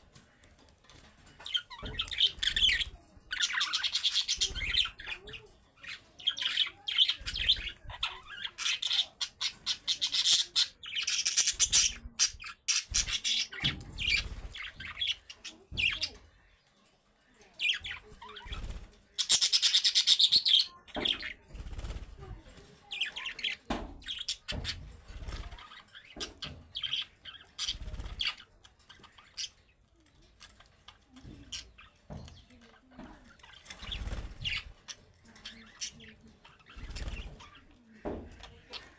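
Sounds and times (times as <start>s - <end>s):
budgerigars chirping: 1.4s - 16.2s, 17.6s - 21.4s, 33.6s - 34.7s.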